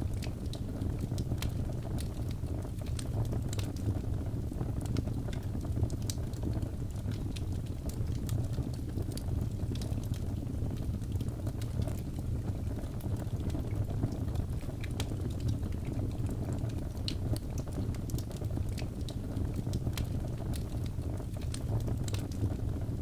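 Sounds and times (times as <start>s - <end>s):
logs crackling and popping: 0.0s - 23.0s
low rumble of flames: 0.0s - 23.0s.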